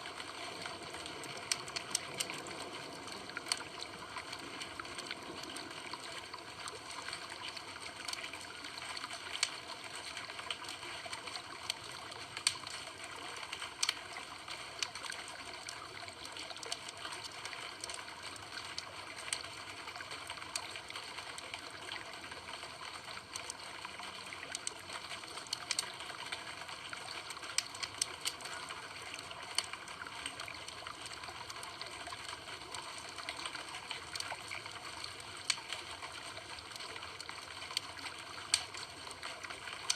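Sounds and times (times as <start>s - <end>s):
campfire crackling: 0.1s - 10.8s, 11.5s - 12.7s, 24.2s - 39.9s.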